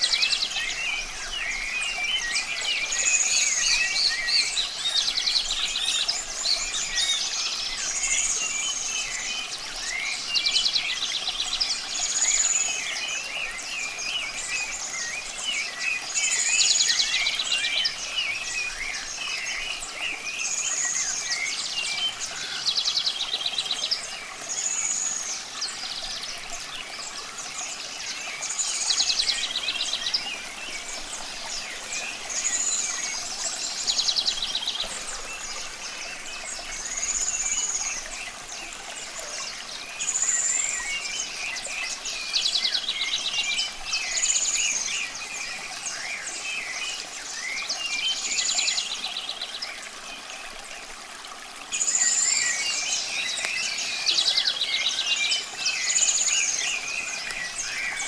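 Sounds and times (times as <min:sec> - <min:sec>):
birds singing: 0:00.0 - 0:50.5, 0:51.7 - 0:58.0
running water hiss: 0:00.0 - 0:58.0.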